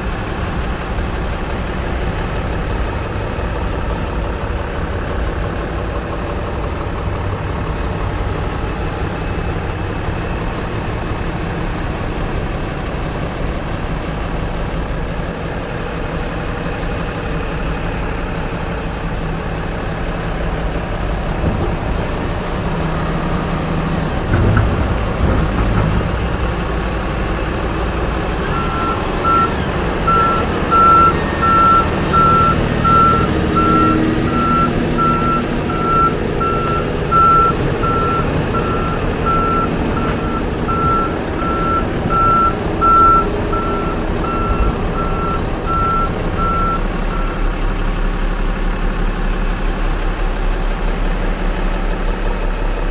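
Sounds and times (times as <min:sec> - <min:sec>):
excavator running: 0:00.0 - 0:52.9
thump: 0:21.4 - 0:22.0, 0:24.2 - 0:27.6
warning alarm beeping: 0:28.5 - 0:47.4.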